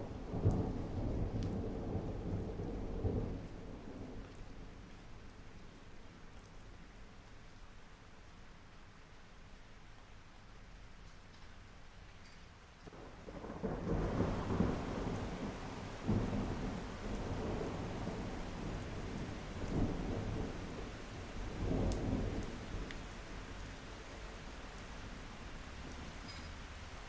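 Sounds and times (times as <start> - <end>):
thunder rumbling: 0.0 - 4.8, 12.9 - 26.3
steady rain: 0.0 - 27.0.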